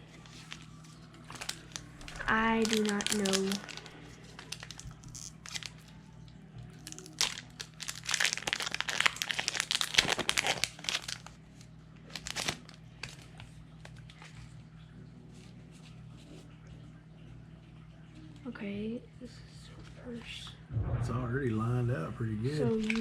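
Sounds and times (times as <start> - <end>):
foil wrapper crinkling: 0.0 - 6.0, 6.8 - 14.4, 22.8 - 23.0.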